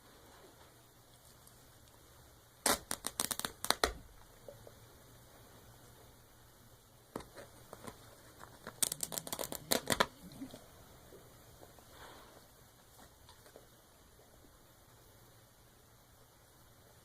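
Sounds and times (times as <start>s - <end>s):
dog tearing plush toy: 2.6s - 3.9s
sharp ripping and crackling: 2.6s - 4.0s, 7.8s - 10.2s.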